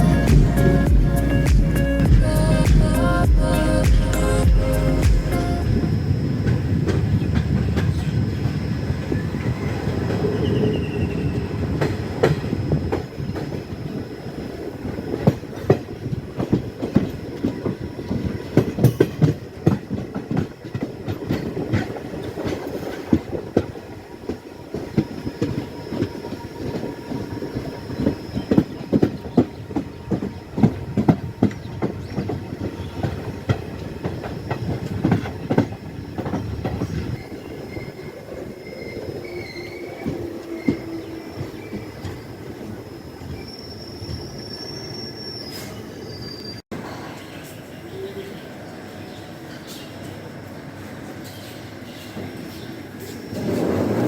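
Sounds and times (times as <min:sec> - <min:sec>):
train rumble: 0:00.0 - 0:44.5, 0:46.8 - 0:54.0
train wheels clattering over rail joints: 0:15.2 - 0:38.4, 0:51.2 - 0:54.0
faint wheel squeal: 0:34.1 - 0:47.5.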